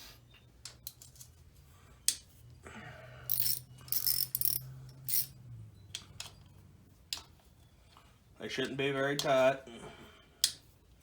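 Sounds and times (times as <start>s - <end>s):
socket ratchet clicking: 3.3s - 5.3s.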